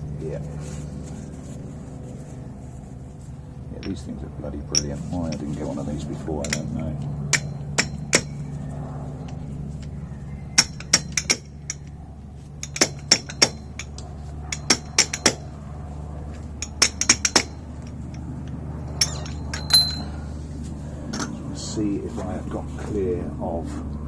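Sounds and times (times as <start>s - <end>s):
steady low hum: 0.0s - 24.0s
sharp metallic clinks: 6.4s - 12.0s, 12.6s - 15.6s, 16.5s - 20.5s.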